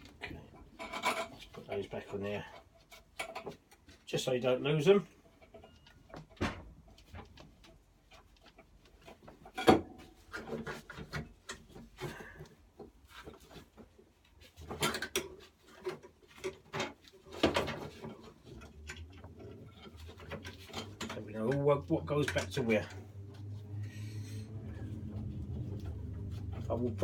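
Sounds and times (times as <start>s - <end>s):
light rubbing: 17.0s - 27.0s.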